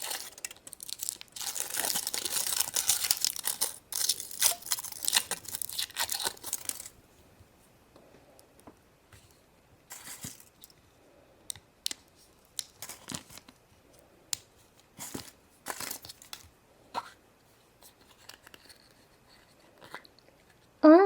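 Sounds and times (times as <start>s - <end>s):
foil wrapper tearing and crinkling: 0.0s - 7.0s, 15.1s - 16.4s.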